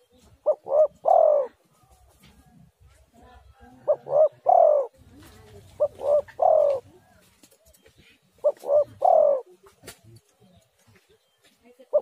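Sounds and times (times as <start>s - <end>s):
dove cooing: 0.0s - 2.7s, 3.4s - 10.0s.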